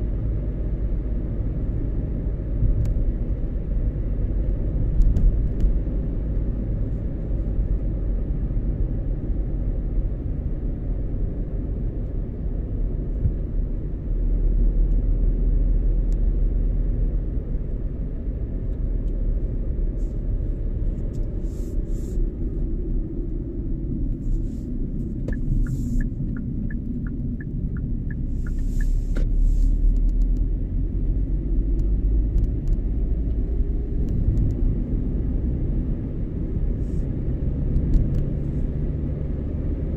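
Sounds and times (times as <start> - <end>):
car road and engine rumble: 0.0 - 39.9
light ticks: 25.2 - 30.5, 31.7 - 33.4, 34.0 - 34.6, 37.7 - 38.3.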